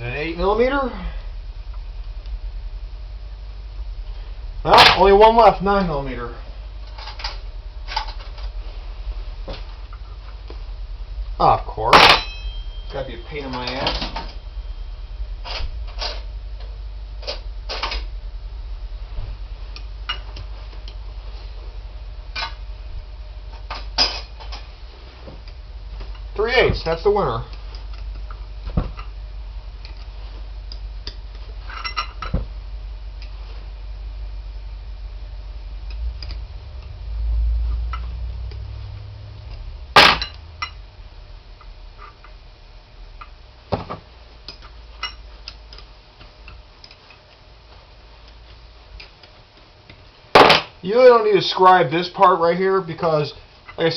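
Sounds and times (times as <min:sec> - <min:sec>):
steady low hum: 0:00.0 - 0:53.9
sharp metal clank: 0:04.7 - 0:05.2, 0:11.8 - 0:16.3, 0:40.0 - 0:40.8, 0:50.4 - 0:50.7
metal hand tools clinking: 0:11.9 - 0:14.4.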